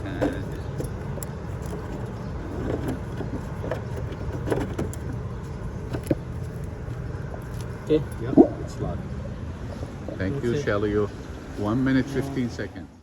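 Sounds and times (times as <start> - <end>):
steady low rumble: 5.0 - 10.6.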